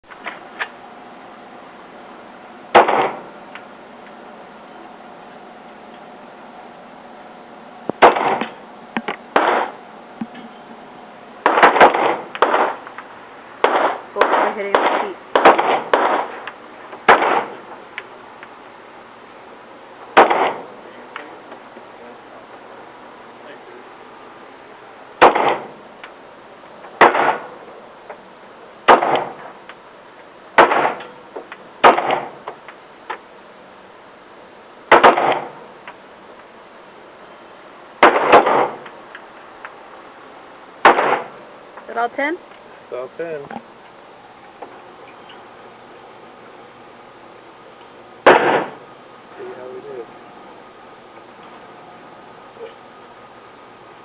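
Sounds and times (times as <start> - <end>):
pistol shots with echo: 2.7 - 3.3, 8.0 - 8.6, 9.4 - 9.8, 11.4 - 12.8, 13.6 - 16.4, 17.1 - 17.6, 20.2 - 20.8, 25.2 - 25.7, 27.0 - 27.5, 28.9 - 29.4, 30.6 - 31.1, 31.8 - 32.4, 34.9 - 35.6, 38.0 - 38.8, 40.8 - 41.4, 48.2 - 48.8.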